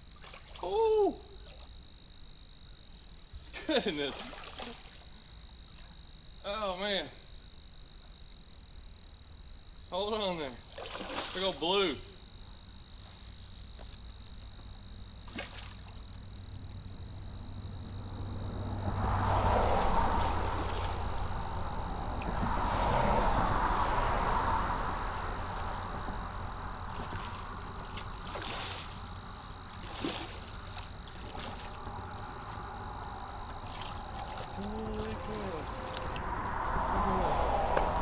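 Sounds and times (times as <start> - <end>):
high-pitched animal trill: 34.6 - 36.2
rushing noise: 35.0 - 38.0.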